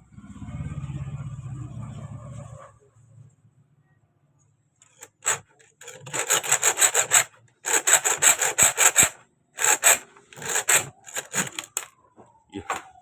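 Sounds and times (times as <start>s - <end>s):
hacksaw sawing through steel: 5.0s - 11.8s.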